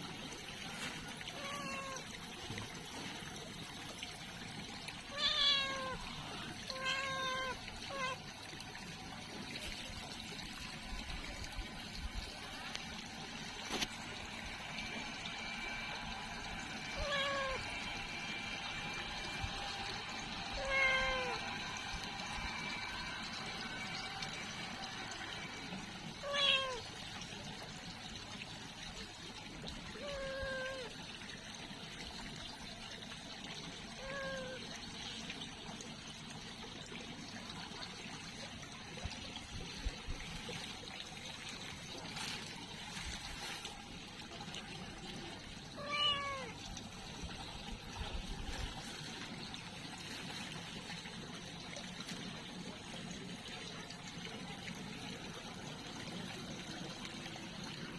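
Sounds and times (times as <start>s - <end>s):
cat meowing: 1.4s - 2.0s, 5.1s - 6.0s, 6.7s - 8.2s, 17.0s - 17.6s, 20.6s - 21.4s, 26.2s - 26.8s, 30.0s - 30.9s, 45.8s - 46.5s.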